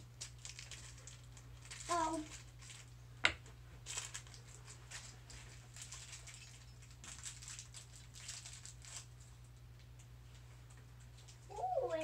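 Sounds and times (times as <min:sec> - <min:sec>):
plastic wrapping crinkling: 0:00.0 - 0:03.0, 0:03.8 - 0:09.5.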